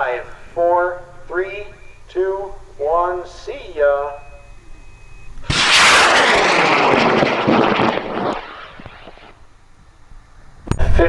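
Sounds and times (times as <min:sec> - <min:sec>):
rocket motor roaring: 0:05.5 - 0:09.4.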